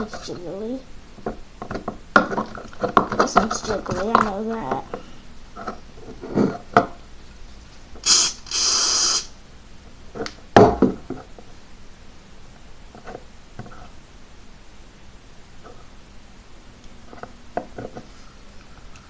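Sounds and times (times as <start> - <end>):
aerosol spray can hissing: 8.0 - 9.3.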